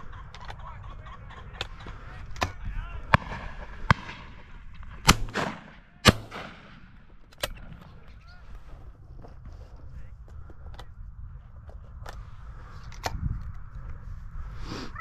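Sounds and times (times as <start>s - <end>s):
shotgun shots: 2.4s - 7.8s.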